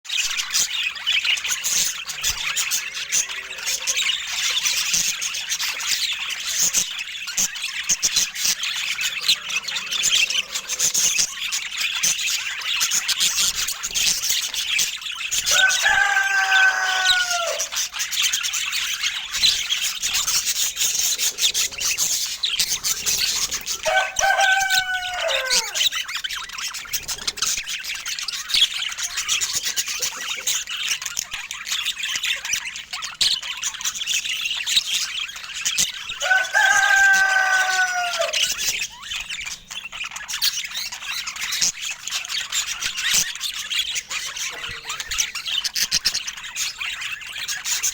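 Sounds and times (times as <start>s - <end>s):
budgerigars chirping and chattering: 0.1s - 47.9s
longer lower falling bird calls: 0.2s - 30.2s, 34.9s - 39.4s.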